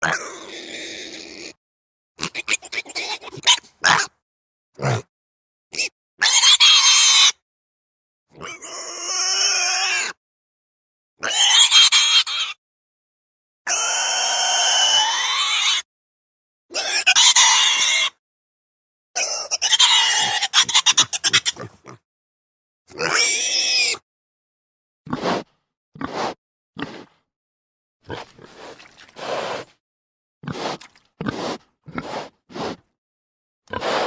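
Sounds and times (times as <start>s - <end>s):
pig grunting and calling: 0.0s - 1.6s, 2.2s - 4.2s, 4.8s - 5.1s, 8.3s - 10.2s, 11.2s - 12.5s, 16.7s - 18.1s, 19.2s - 22.0s, 22.9s - 24.0s, 25.1s - 25.4s, 26.0s - 27.2s, 28.1s - 29.7s, 30.4s - 32.8s, 33.7s - 34.0s.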